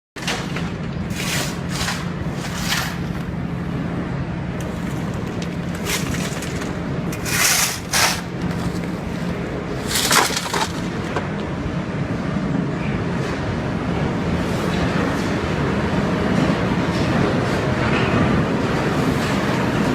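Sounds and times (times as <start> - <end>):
powder mill droning: 0.2 - 11.5.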